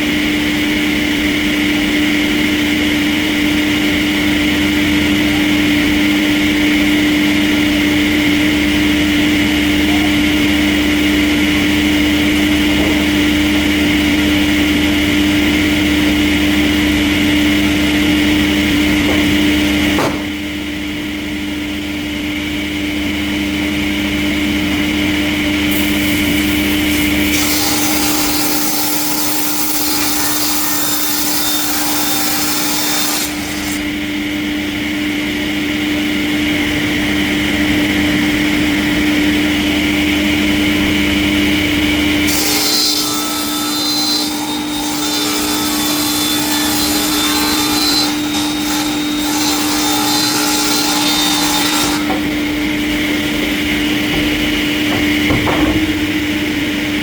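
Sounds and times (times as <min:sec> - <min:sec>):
steady machine hum: 0:00.0 - 0:29.6, 0:33.3 - 0:42.4, 0:46.4 - 0:57.0
sawmill saw cutting wood: 0:24.8 - 0:34.0, 0:41.6 - 0:57.0.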